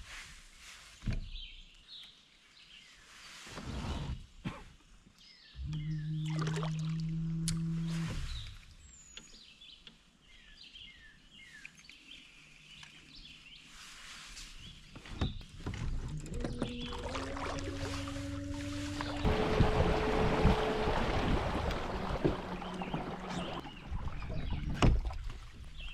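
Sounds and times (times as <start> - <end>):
bird chirping: 5.3 - 6.4
low tone rising in pitch: 5.6 - 8.5, 16.0 - 24.6
steady low hum: 16.0 - 24.3.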